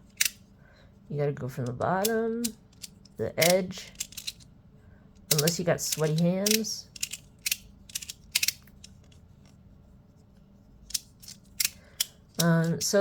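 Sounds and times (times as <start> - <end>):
plastic fidget toy clicks: 2.0 - 4.4, 5.3 - 9.0, 10.9 - 12.7.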